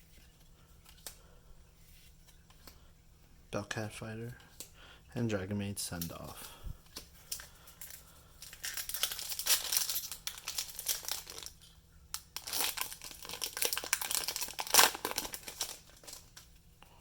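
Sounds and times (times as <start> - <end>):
foil wrapper crinkling and tearing: 7.2 - 16.5.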